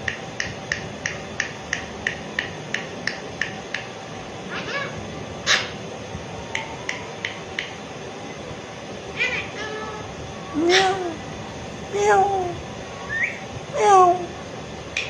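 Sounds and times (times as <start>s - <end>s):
parrot clicking: 0.0s - 3.9s
parrot meow-like call: 4.5s - 5.7s, 9.1s - 11.2s
parrot harsh squawk: 4.5s - 5.8s, 9.2s - 10.0s, 10.7s - 11.0s.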